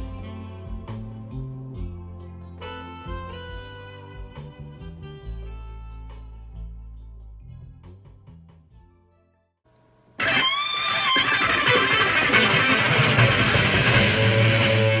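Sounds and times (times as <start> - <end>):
soft music: 0.0 - 9.6
loud electric guitar music: 10.2 - 15.0.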